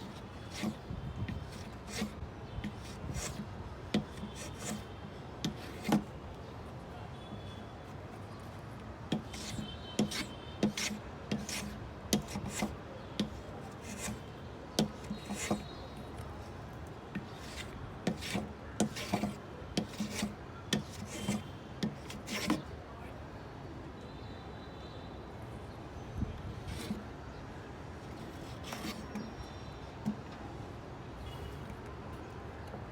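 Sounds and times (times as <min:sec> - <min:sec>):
hand tool scraping wood: 0:00.0 - 0:06.1, 0:09.1 - 0:15.8, 0:17.2 - 0:22.7, 0:26.6 - 0:27.1, 0:28.1 - 0:29.3.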